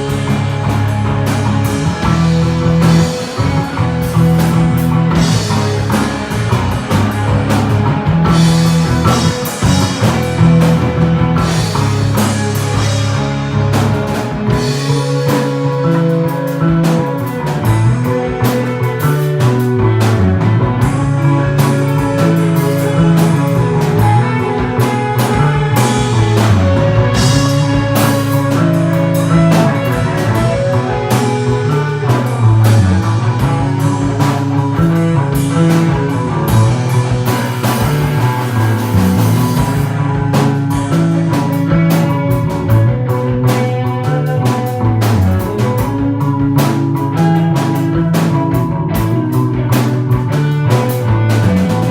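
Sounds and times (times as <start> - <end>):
held bass guitar notes: 0.0 - 51.9
live rock band instrumental: 0.0 - 51.9
drum hits: 16.6 - 43.9.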